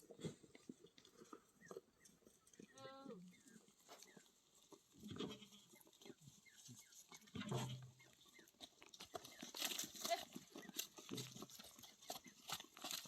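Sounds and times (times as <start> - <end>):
livestock bleating: 5.0 - 5.7.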